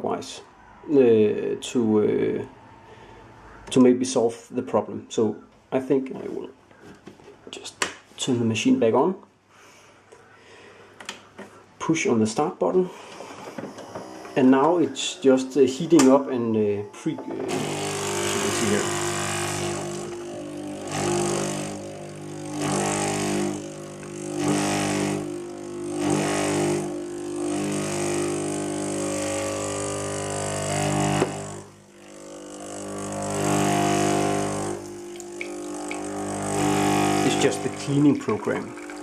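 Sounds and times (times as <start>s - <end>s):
espresso machine pump humming: 13.2s - 16.2s, 17.3s - 39.0s.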